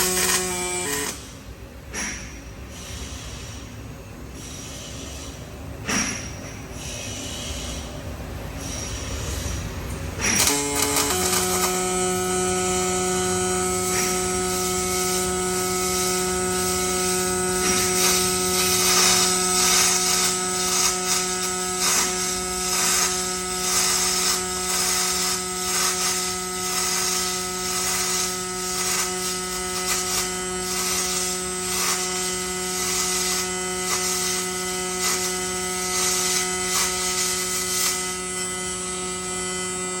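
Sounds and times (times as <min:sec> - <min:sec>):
welding arc crackling: 0:00.0 - 0:01.2, 0:10.2 - 0:40.0
welding electrical hum: 0:00.0 - 0:02.2, 0:08.6 - 0:40.0.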